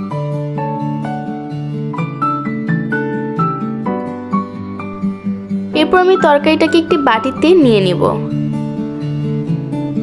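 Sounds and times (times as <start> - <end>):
plucked string melody: 4.9 - 10.0.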